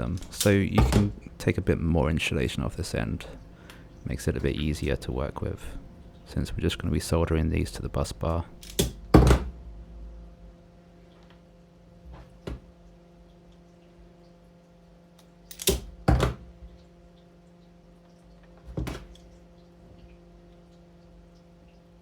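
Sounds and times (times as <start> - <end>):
wire strippers clicking: 0.0 - 1.6
low steady hum: 0.0 - 12.0.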